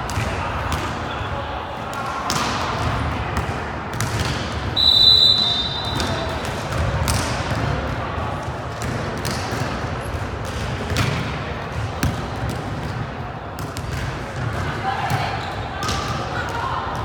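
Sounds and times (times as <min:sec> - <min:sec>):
referee's whistle: 0:04.8 - 0:06.3.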